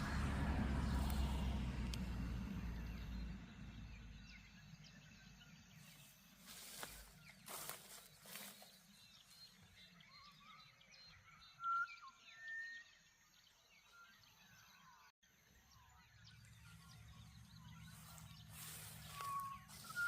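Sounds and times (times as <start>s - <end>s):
low wind rumble: 0.0s - 6.3s
bird chorus chirping: 0.1s - 20.0s
whistled bird notes: 6.5s - 15.1s, 15.7s - 20.0s.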